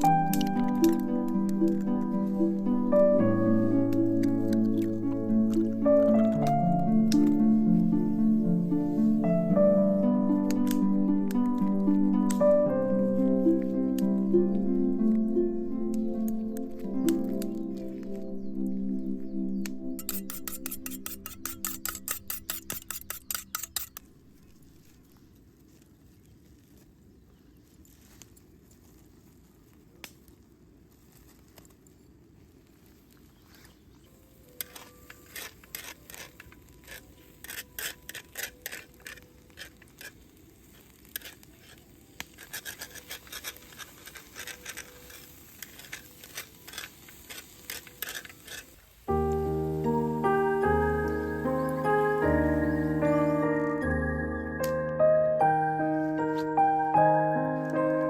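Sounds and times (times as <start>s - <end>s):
music: 0.0s - 23.1s, 49.1s - 58.0s
scraping strokes: 19.6s - 25.2s, 34.6s - 49.0s.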